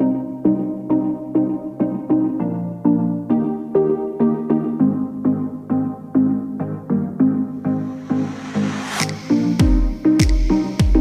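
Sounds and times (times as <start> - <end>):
repeated electronic keyboard notes: 0.0 - 11.0
swelling whoosh: 8.0 - 9.6.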